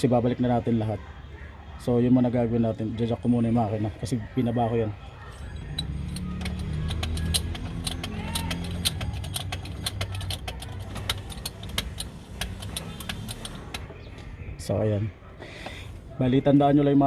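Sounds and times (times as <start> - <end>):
jack clicking metallically: 5.4 - 14.1.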